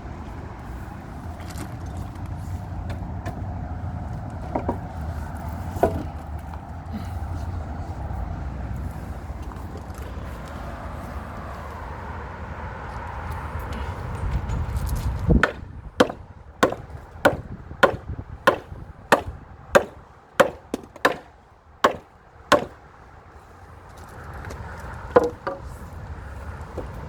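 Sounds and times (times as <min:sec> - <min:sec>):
hammer blows on timber: 0:05.8 - 0:06.1, 0:15.4 - 0:22.8, 0:25.2 - 0:25.7.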